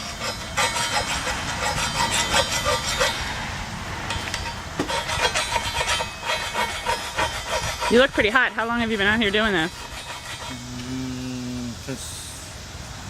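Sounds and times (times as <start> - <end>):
file scraping metal: 0.0 - 3.4, 4.1 - 10.8.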